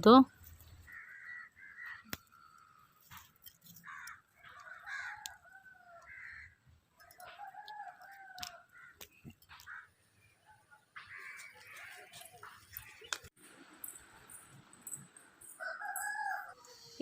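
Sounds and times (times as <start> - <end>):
birds calling: 0.4 - 13.3
faint rooster crowing: 3.9 - 9.0, 15.6 - 17.0.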